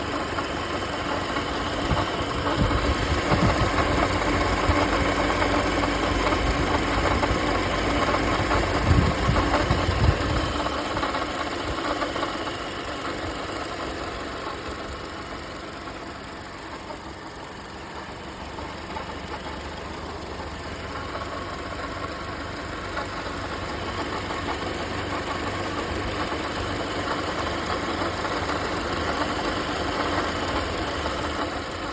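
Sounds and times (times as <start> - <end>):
car engine running: 0.0 - 31.9.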